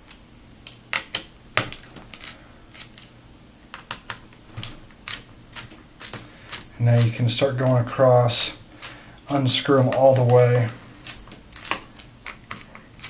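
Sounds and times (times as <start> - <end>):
screwdriver turning screws: 4.6 - 7.2, 9.7 - 13.0.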